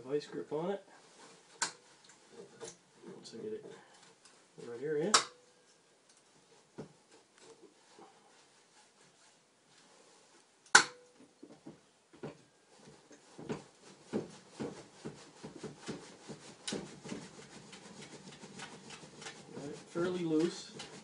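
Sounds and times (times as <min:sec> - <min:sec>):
sharp metallic snap: 0:05.1 - 0:05.4, 0:10.7 - 0:11.1.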